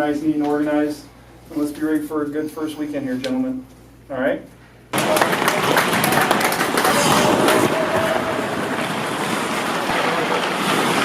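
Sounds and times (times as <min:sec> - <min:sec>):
steady rush of noise: 0:05.0 - 0:11.0
skates scraping on ice: 0:06.7 - 0:11.0
hockey sticks and pucks clacking: 0:06.8 - 0:11.0.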